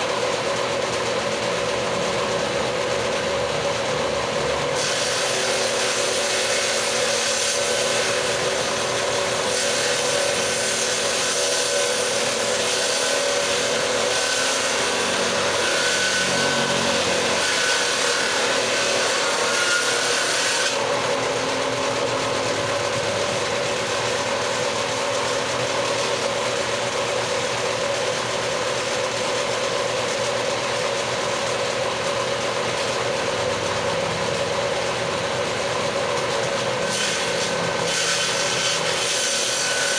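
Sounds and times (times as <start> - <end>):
tool cutting into wood: 4.8 - 21.4, 36.4 - 39.9
power tool motor whine: 6.9 - 19.2.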